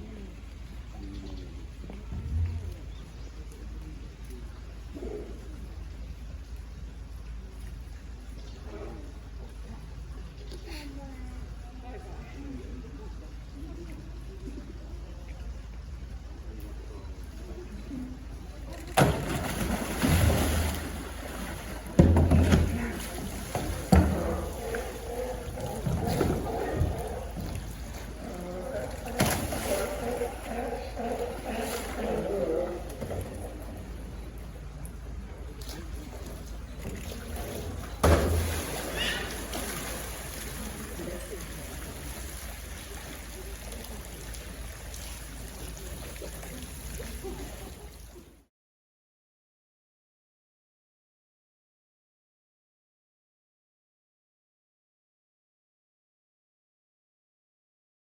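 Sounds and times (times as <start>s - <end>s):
faint voices murmuring: 0.0s - 48.4s
bear splashing in water: 18.7s - 48.2s
heavy thumping splashes: 18.8s - 34.3s, 35.6s - 47.7s.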